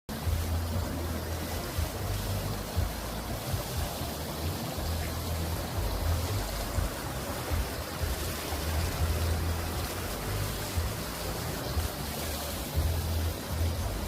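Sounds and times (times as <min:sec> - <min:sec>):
water rushing: 0:00.1 - 0:14.0.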